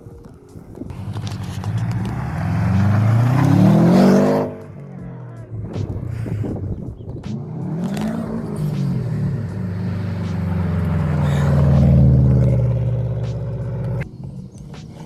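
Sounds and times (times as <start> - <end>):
car engine revving: 0.8 - 15.0.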